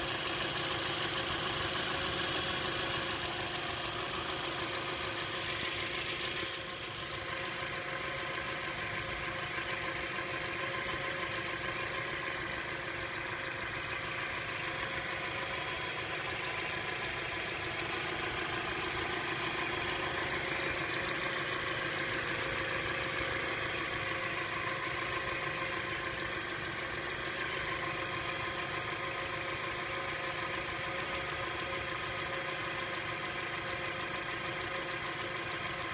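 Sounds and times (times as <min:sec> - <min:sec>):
car engine running: 0:00.0 - 0:35.9
engine rattling and squealing whine: 0:03.5 - 0:09.2.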